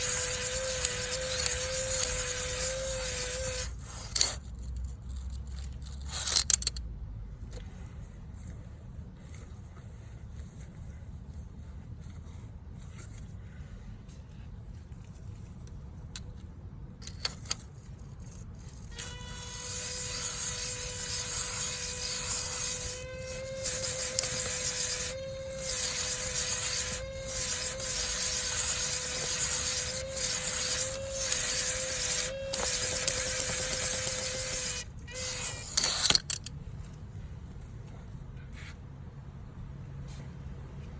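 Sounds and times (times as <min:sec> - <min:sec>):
electric drill motor whine: 0:00.0 - 0:04.4, 0:18.6 - 0:36.4
hone stones scraping cylinder wall: 0:00.0 - 0:06.8, 0:17.0 - 0:37.1.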